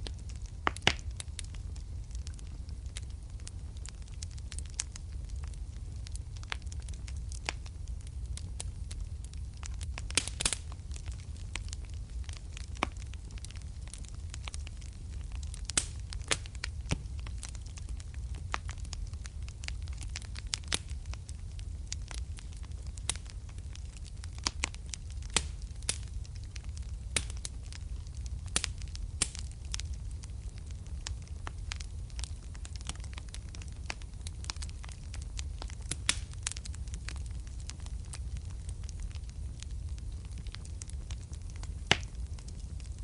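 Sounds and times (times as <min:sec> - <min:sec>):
fire crackling: 0:00.0 - 0:43.0
sharp pops of fire: 0:00.0 - 0:43.0.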